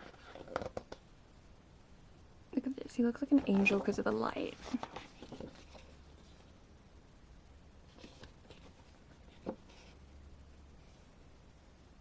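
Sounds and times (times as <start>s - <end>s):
low room hum: 0.0s - 12.0s
paper rustling: 3.3s - 6.5s, 7.9s - 10.0s.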